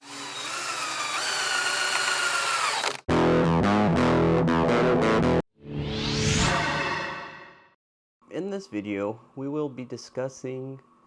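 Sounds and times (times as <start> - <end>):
distorted electric guitar: 3.1 - 5.4.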